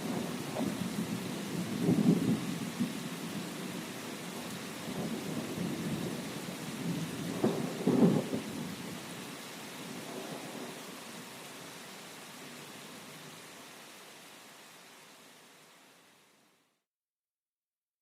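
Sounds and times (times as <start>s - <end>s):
thunder rumbling: 0.0s - 3.8s, 4.8s - 8.7s
steady rain: 0.0s - 16.8s.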